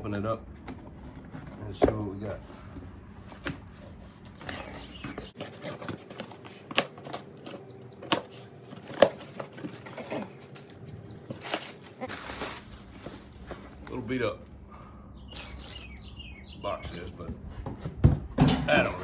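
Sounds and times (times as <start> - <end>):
cardboard rustling: 0.5 - 14.2.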